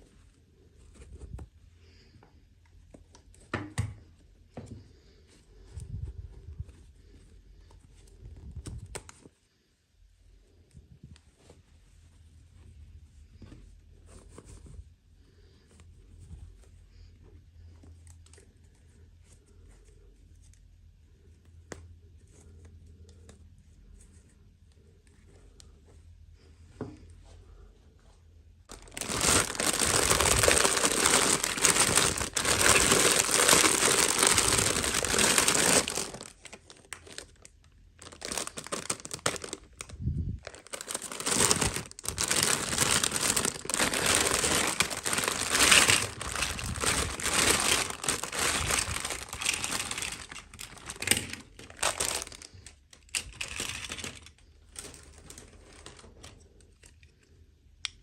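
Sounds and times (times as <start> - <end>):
packaging crinkling: 28.7 - 56.6.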